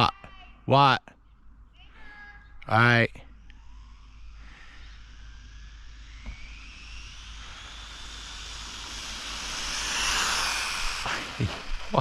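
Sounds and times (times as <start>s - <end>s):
rc car electric motor whine: 2.8s - 12.0s.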